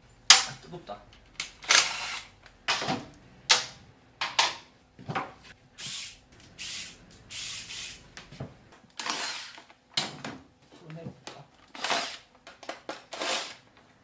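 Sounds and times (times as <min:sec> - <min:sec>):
short hissing noises: 0:05.8 - 0:08.4.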